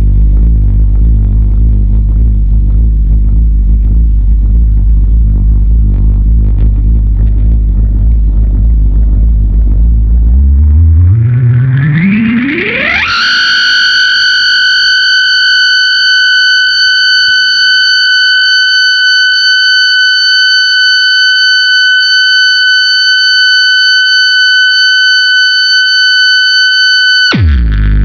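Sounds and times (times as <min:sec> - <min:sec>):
loud low guitar drone: 0:00.0 - 0:14.4, 0:27.3 - 0:28.0
high-pitched electric guitar tone: 0:00.0 - 0:28.0.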